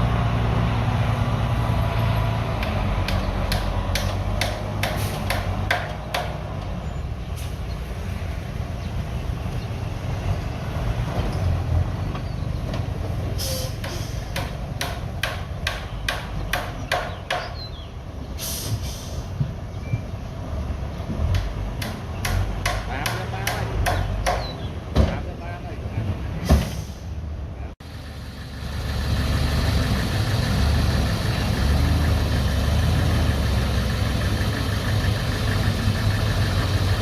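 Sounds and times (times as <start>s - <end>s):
bulldozer engine running: 0.0s - 16.9s, 27.8s - 37.0s
sharp knocks: 2.6s - 6.4s.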